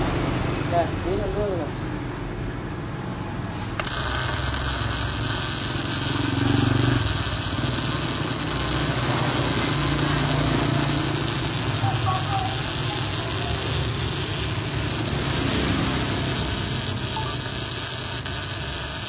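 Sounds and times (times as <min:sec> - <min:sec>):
low electrical hum: 0:03.5 - 0:19.0
welding arc crackling: 0:03.8 - 0:19.0.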